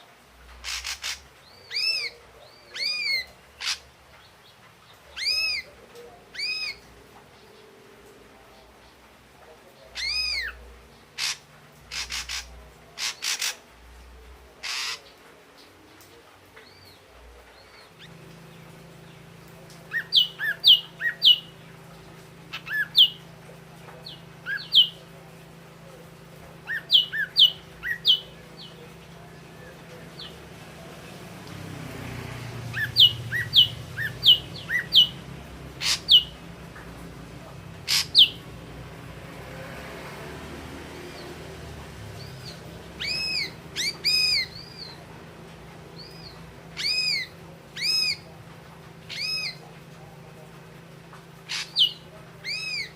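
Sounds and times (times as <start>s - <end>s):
bird rasping calls: 0.6s - 2.1s, 10.0s - 10.6s, 11.2s - 13.7s, 14.6s - 15.1s, 35.8s - 36.4s, 37.8s - 38.4s, 43.0s - 45.0s, 46.0s - 48.2s, 51.4s - 52.9s.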